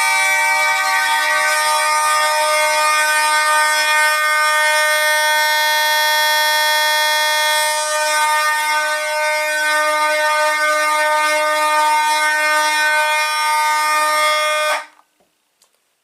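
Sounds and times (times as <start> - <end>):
fire alarm horns steady tone: 0.0 - 14.9.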